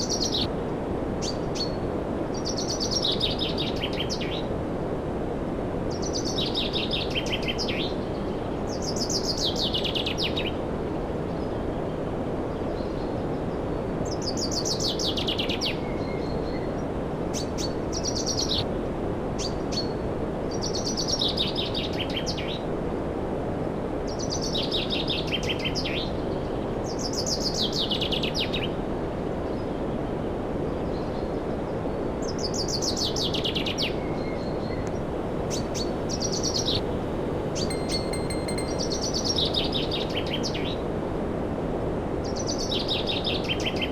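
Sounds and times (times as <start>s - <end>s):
songbird trilling: 35.5s - 40.0s.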